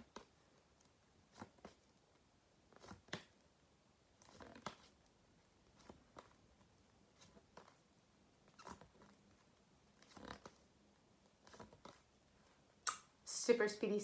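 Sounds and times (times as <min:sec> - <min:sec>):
paper flashcards clicking and rustling: 0:02.7 - 0:03.4, 0:04.2 - 0:05.0, 0:05.7 - 0:06.4, 0:08.5 - 0:10.7, 0:11.4 - 0:12.1.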